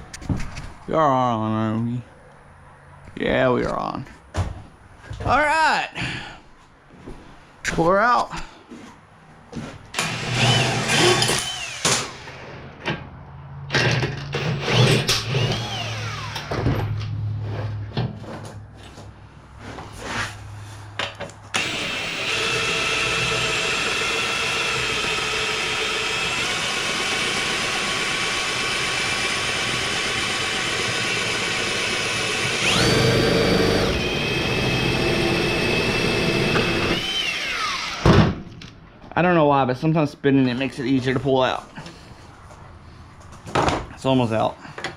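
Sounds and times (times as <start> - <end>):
power drill running: 10.0 - 12.5, 14.3 - 16.6, 21.5 - 38.2.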